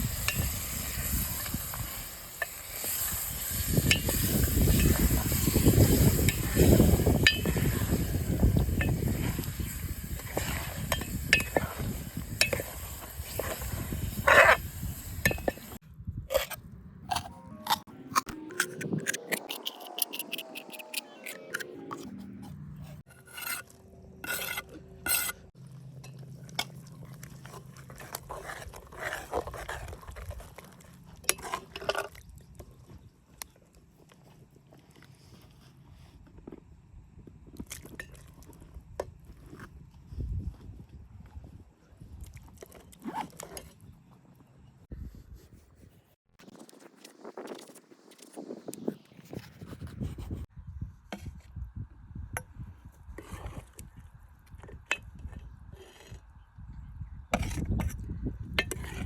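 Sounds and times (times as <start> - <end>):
food sizzling in pot: 0.0 - 15.8.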